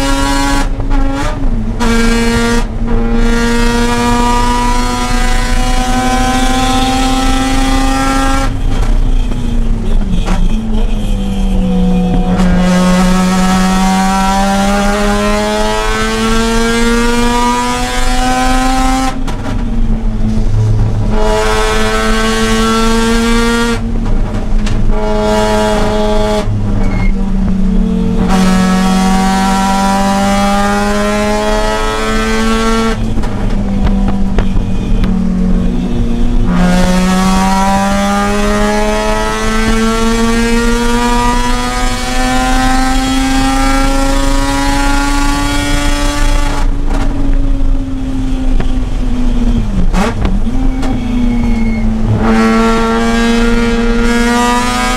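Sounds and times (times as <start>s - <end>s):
rotary engine revving: 48.5s - 54.9s.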